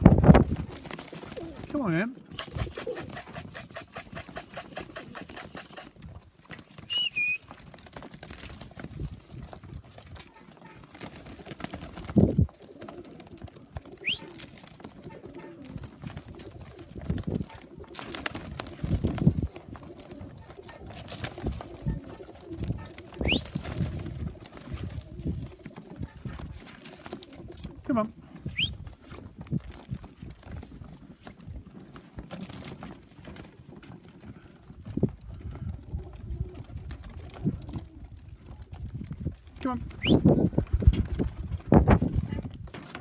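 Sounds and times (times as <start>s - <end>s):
pigeons cooing: 0.6s - 6.0s, 10.4s - 28.9s, 35.3s - 38.8s.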